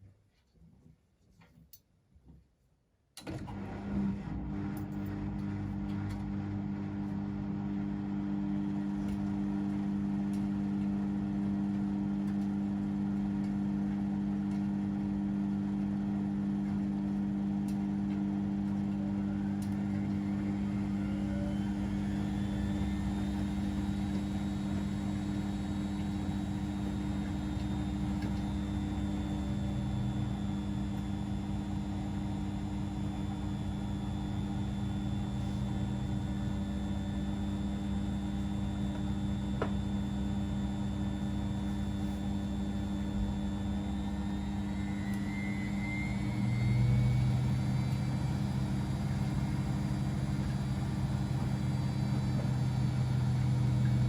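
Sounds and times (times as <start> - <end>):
washing machines humming: 3.2 - 54.0
motor whine rising in pitch: 18.7 - 54.0.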